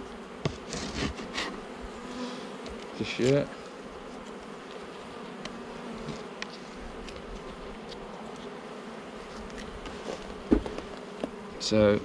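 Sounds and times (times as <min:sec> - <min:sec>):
bees buzzing: 0:00.0 - 0:12.0.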